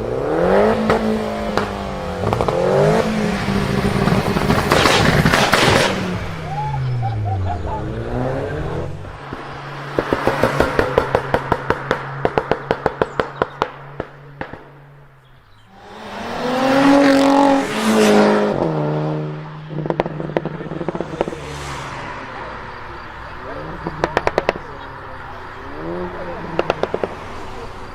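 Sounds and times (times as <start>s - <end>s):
car engine idling: 0.0s - 27.9s
car engine revving: 0.0s - 27.9s
exhaust pops and crackles: 0.7s - 6.6s, 9.0s - 15.6s, 19.6s - 21.6s, 23.2s - 27.9s.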